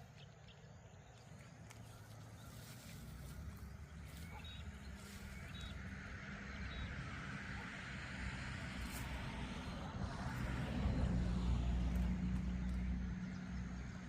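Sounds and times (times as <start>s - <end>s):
bird chirping: 0.0s - 5.8s
engine hum approaching: 0.0s - 14.0s.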